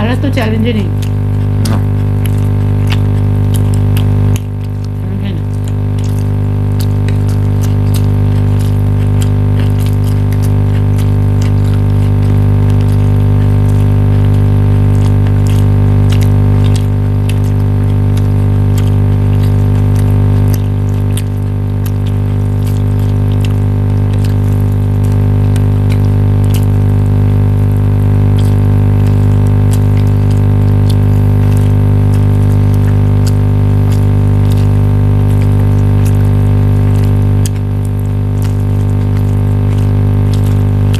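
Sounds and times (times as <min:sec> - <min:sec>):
electric motor humming: 0:00.0 - 0:40.9.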